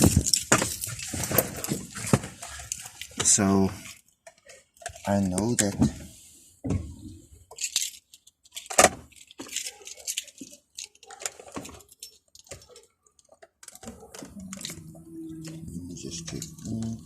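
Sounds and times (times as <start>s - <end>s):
keys jangling: 0.0s - 1.7s, 7.5s - 15.5s
small hard objects clicking and rattling: 0.0s - 5.7s, 7.4s - 17.0s.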